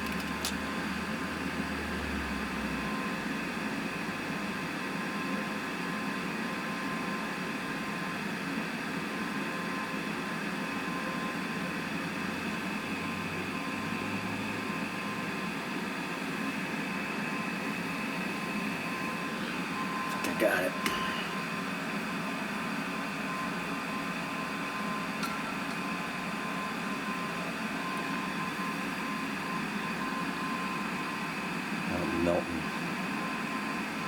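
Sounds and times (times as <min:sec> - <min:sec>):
machine hum and hiss: 0:00.0 - 0:34.0.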